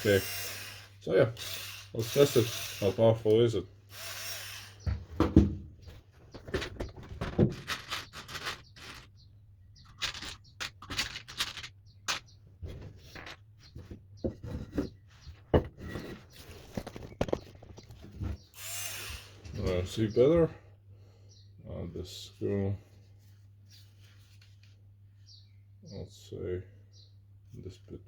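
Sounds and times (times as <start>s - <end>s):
small objects clicking and scraping: 6.4s - 13.4s, 15.9s - 18.0s.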